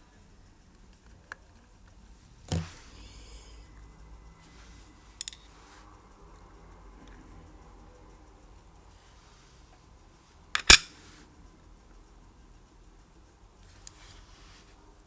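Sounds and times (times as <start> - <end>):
small tools clicking on metal: 10.6 - 10.9.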